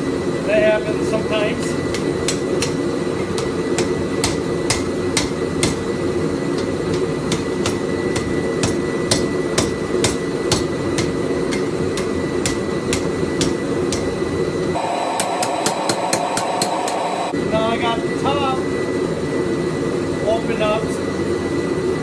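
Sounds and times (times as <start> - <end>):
forge running noise: 0.0 - 22.0
hammer striking hot steel on anvil: 1.6 - 17.2.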